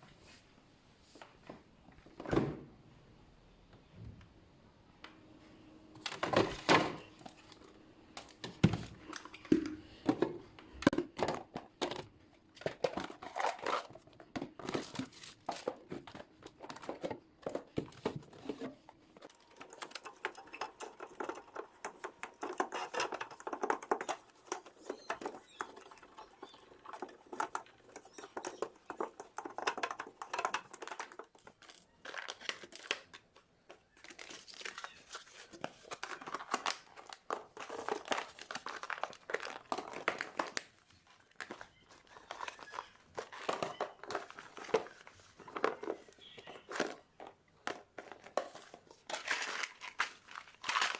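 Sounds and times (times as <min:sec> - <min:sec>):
containers clattering: 0:06.0 - 0:32.8, 0:35.3 - 0:50.9
plastic packaging crinkling: 0:12.5 - 0:50.9.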